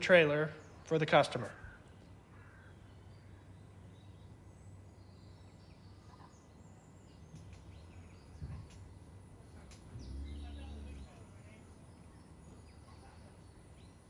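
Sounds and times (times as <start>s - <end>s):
faint low hum: 3.3s - 14.0s
distant bird chirps: 9.8s - 14.0s.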